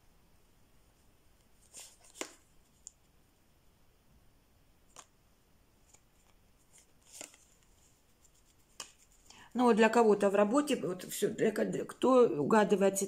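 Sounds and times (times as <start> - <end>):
cards clicking on a table: 1.8 - 2.4, 8.7 - 9.1.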